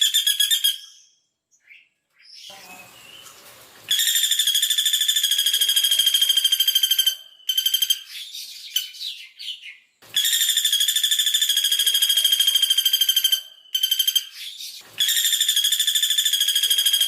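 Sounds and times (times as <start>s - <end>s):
bird chirps: 0.0s - 17.0s
woodpecker rapid trill: 10.2s - 17.0s.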